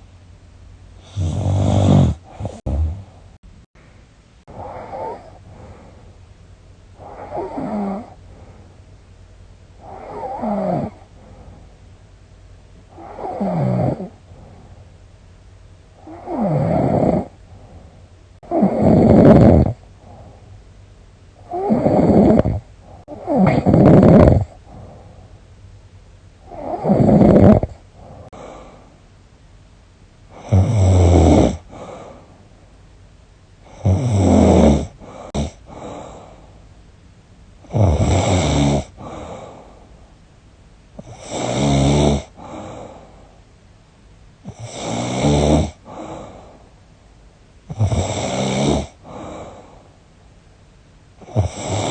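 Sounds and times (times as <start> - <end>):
woman snoring loudly: 1.0 - 3.1, 4.5 - 5.4, 7.0 - 8.2, 9.8 - 11.1, 12.9 - 14.2, 16.0 - 17.4, 18.5 - 19.8, 21.5 - 24.6, 26.5 - 27.8, 30.4 - 31.7, 33.7 - 35.6, 37.7 - 39.0, 41.0 - 42.4, 44.5 - 46.0, 47.7 - 49.2, 51.2 - 51.9.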